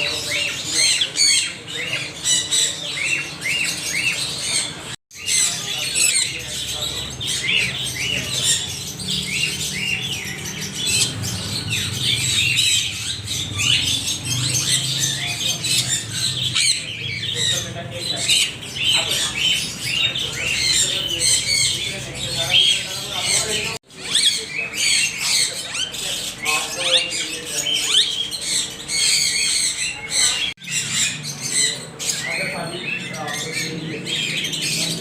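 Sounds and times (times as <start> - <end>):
parrots squawking and chattering: 0.0 - 35.0.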